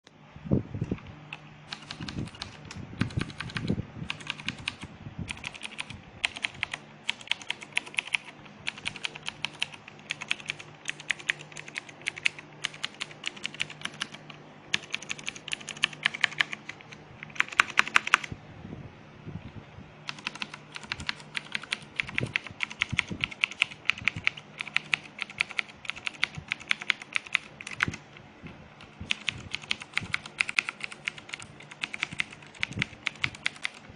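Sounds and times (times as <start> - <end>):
mechanical keyboard key clicks: 1.7 - 18.3, 29.1 - 33.8.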